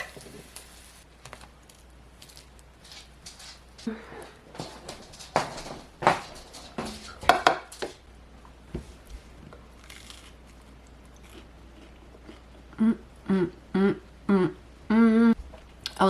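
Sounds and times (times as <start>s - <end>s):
utensils and dishes clinking: 0.0s - 0.7s.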